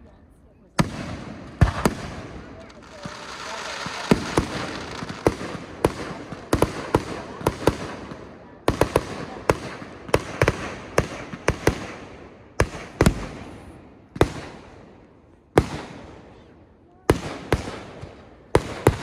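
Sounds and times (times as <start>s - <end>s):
fireworks bangs: 0.8s - 19.0s
fireworks crackle: 0.9s - 7.8s.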